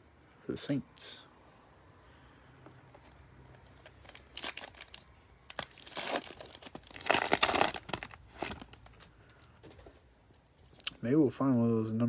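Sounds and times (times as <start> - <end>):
wrapper tearing and crinkling: 3.6 - 9.0.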